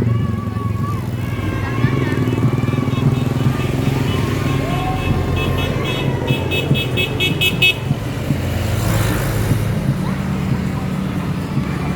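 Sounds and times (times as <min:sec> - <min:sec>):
vehicle engine rumble: 0:00.0 - 0:11.9
musical bus horn toots: 0:02.2 - 0:07.9.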